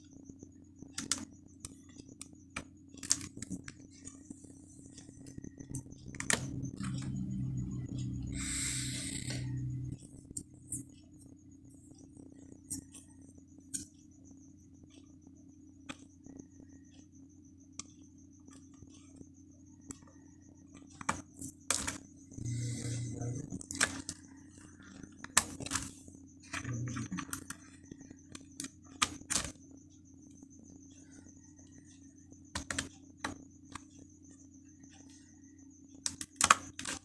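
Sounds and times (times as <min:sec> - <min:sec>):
clicks of computer memory handling: 0:00.9 - 0:04.3, 0:04.9 - 0:10.9, 0:20.8 - 0:24.2, 0:24.9 - 0:29.6, 0:32.5 - 0:34.0
steady hum: 0:01.4 - 0:12.8, 0:22.2 - 0:23.7, 0:26.4 - 0:28.0.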